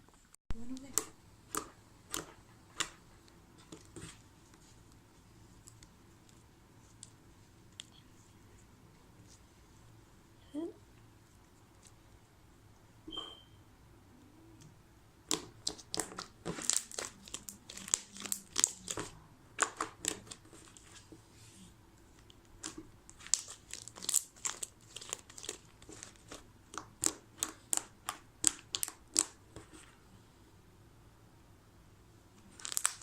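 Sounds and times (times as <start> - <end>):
slime crackling with sharp pops: 15.2 - 20.4, 22.6 - 29.4.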